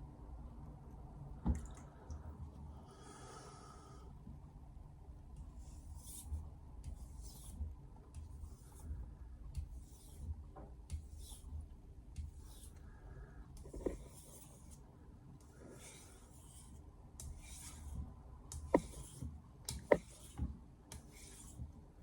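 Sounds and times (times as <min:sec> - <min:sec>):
knife scraping on whetstone: 0:13.7 - 0:14.6, 0:18.7 - 0:19.1.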